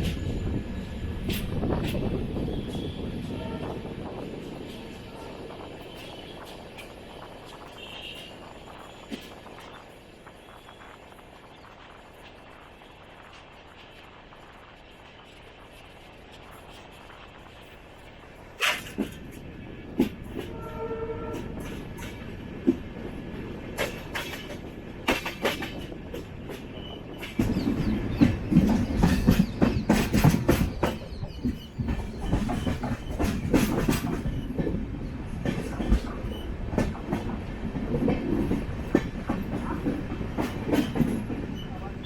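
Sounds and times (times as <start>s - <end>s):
train rumbling: 0.0s - 42.0s
wheels clacking over rail joints: 18.5s - 42.0s.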